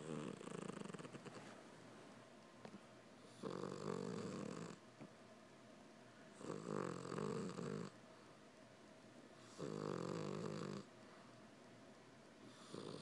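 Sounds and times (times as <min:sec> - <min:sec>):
cat snoring: 0:00.0 - 0:01.6, 0:03.2 - 0:04.8, 0:06.4 - 0:08.0, 0:09.4 - 0:10.9, 0:12.4 - 0:13.0.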